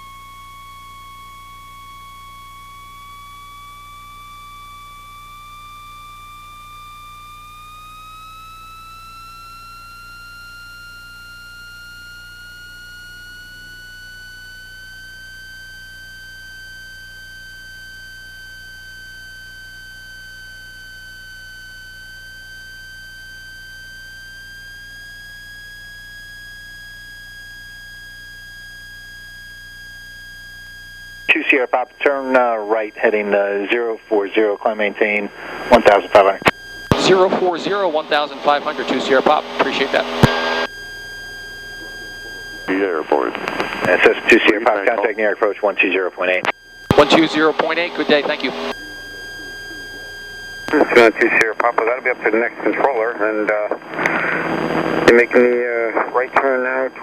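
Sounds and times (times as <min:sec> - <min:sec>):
electrical whine on intercom: 0:00.0 - 0:57.0
low steady hum: 0:31.3 - 0:57.0.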